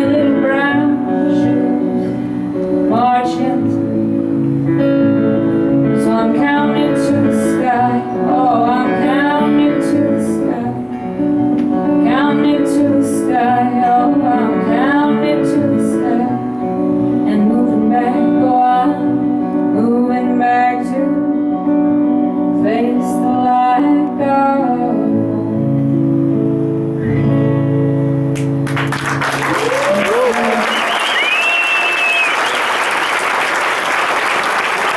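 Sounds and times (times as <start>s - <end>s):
woman singing: 0.0s - 4.5s, 5.5s - 26.4s.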